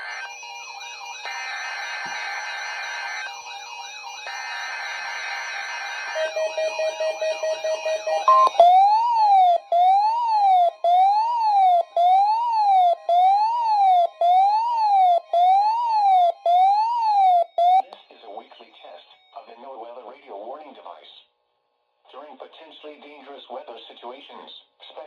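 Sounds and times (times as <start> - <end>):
rising and falling siren tone: 5.8 - 17.8
rapid chirping beeps: 8.2 - 8.8.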